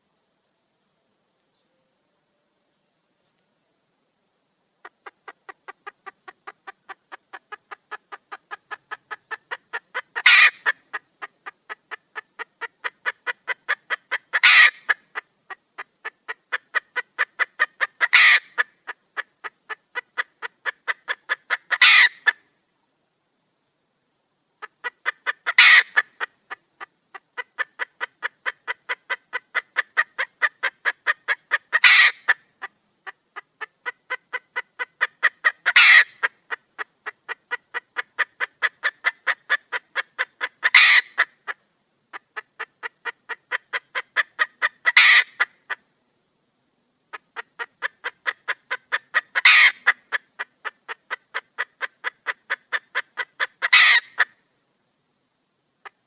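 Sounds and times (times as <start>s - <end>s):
hen clucking: 4.8s - 22.5s, 24.6s - 45.9s, 47.1s - 54.4s
hen squawking: 9.9s - 10.8s, 13.7s - 15.0s, 18.0s - 18.6s, 21.5s - 22.3s, 24.8s - 26.1s, 31.7s - 32.4s, 35.0s - 36.3s, 40.4s - 41.3s, 44.1s - 45.5s, 48.2s - 50.0s, 53.2s - 54.3s.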